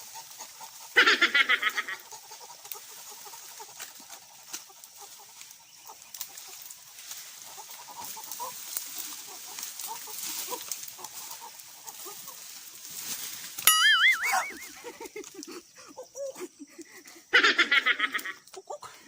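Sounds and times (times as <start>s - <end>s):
chickens clucking: 0.0s - 12.8s, 13.7s - 19.0s
rustling: 2.6s - 13.7s.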